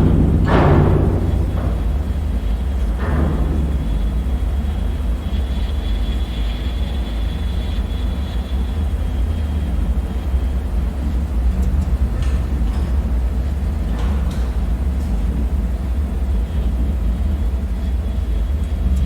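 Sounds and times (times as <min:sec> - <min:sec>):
deep low rumble drone: 0:00.0 - 0:19.0.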